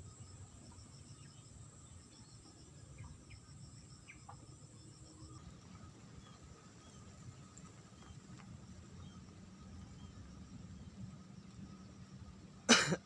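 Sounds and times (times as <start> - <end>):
insects pulsing chirps: 0.0 - 13.0.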